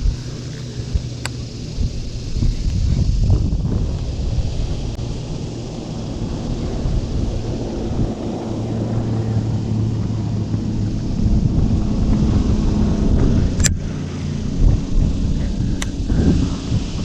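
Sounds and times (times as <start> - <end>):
boat engine humming: 0.0 - 17.0
wind rumbling on microphone: 0.0 - 17.0
sharp click: 13.6 - 13.8.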